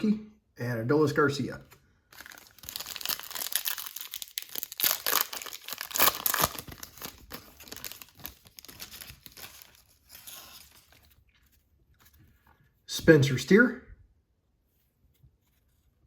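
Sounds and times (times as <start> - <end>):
wrapper crinkling and tearing: 2.0 - 11.2.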